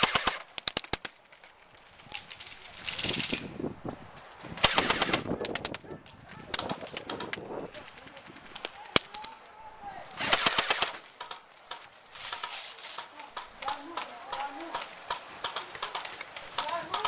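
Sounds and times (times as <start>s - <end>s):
airsoft guns firing bursts: 0.0s - 1.2s, 4.6s - 5.8s, 10.1s - 11.8s, 13.0s - 17.0s.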